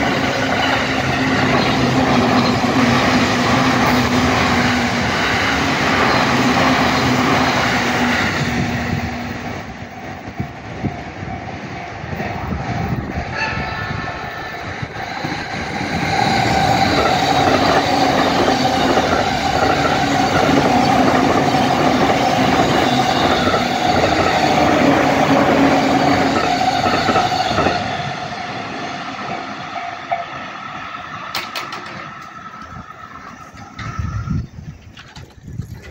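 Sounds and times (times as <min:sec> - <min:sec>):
train wheels clattering: 0:31.3 - 0:35.9.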